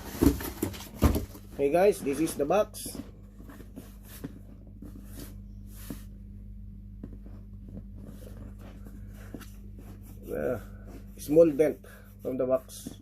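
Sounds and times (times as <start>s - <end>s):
steady low hum: 0.0s - 13.0s
soft rustle: 7.0s - 13.0s.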